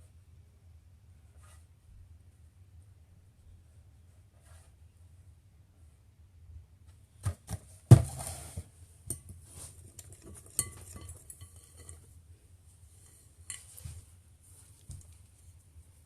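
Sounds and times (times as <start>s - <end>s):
pan and utensils clattering: 8.1s - 12.2s.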